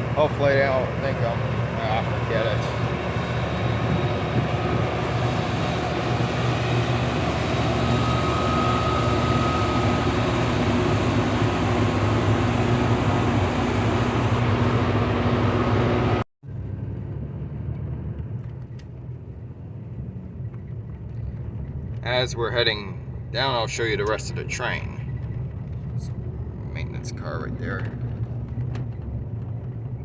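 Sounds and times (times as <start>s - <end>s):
loud engine drone: 0.0s - 18.1s
dull vehicle rumble: 0.0s - 30.0s.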